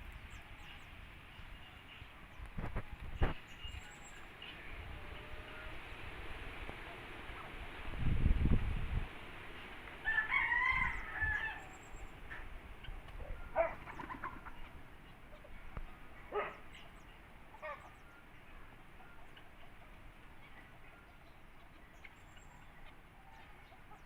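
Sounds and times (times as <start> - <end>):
rooster crowing: 10.0 - 11.8.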